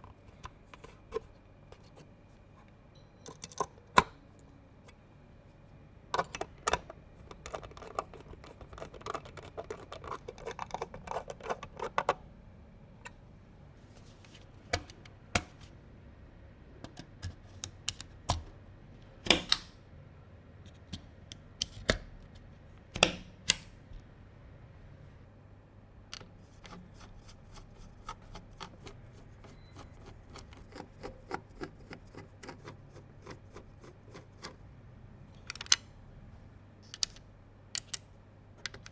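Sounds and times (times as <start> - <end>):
plastic and metal clicks and taps: 19.2 - 19.7.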